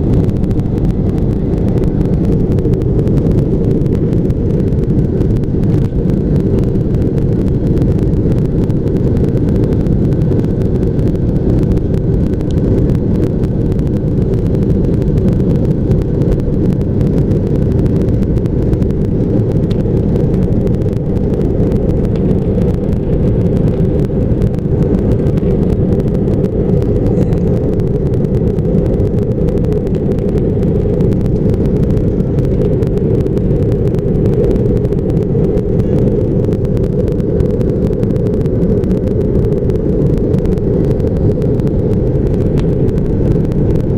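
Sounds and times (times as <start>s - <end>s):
aircraft engine drone in cabin: 0.0s - 43.9s.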